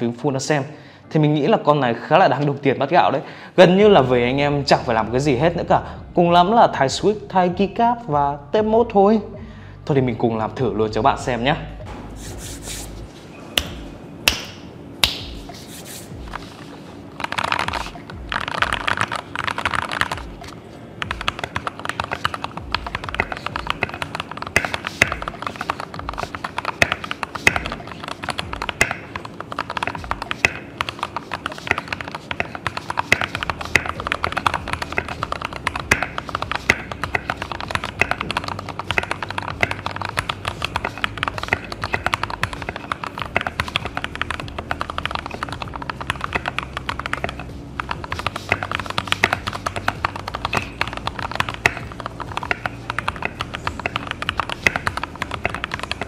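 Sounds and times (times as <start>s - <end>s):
mechanical keyboard typing: 17.2s - 56.0s.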